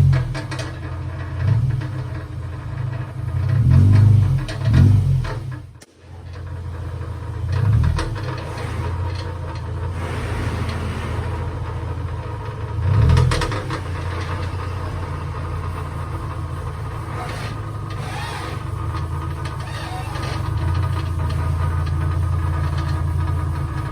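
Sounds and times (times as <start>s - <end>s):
car engine idling and revving: 0.0s - 23.9s.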